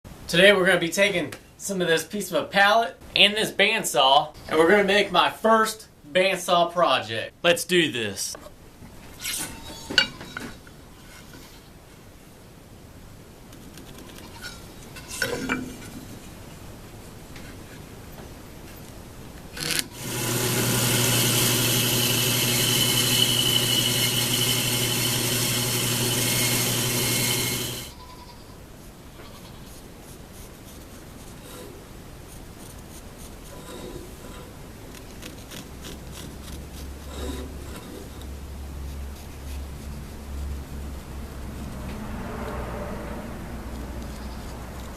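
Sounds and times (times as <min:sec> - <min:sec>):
bandsaw running: 0:19.6 - 0:27.9.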